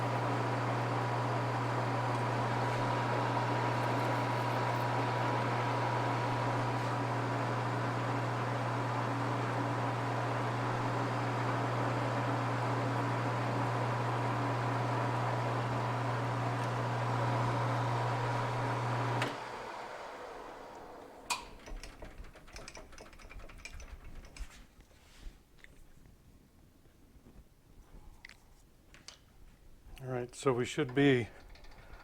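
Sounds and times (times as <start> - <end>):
lathe motor humming: 0.0 - 21.5.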